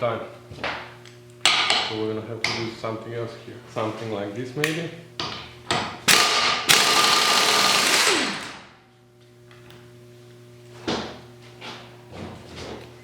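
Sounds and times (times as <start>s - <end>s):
power tool rattling: 6.1s - 8.7s.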